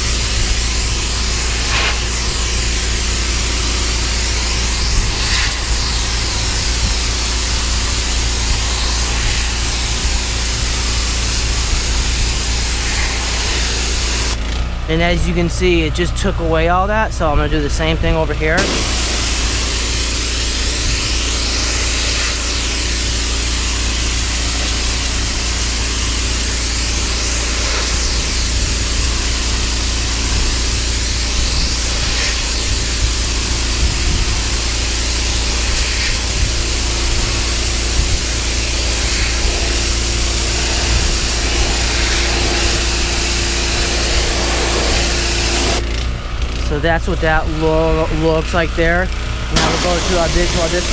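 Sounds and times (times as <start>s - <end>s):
pressure washer jet hissing: 0.0s - 14.6s, 17.8s - 46.0s, 48.6s - 50.9s
pressure washer motor hum: 0.0s - 50.9s.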